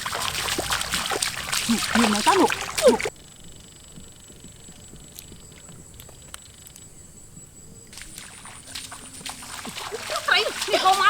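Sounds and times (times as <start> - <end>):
water hiss: 0.0 - 3.1, 7.9 - 11.0
high-pitched insect whine: 0.1 - 10.3
faint clicks: 3.6 - 6.9.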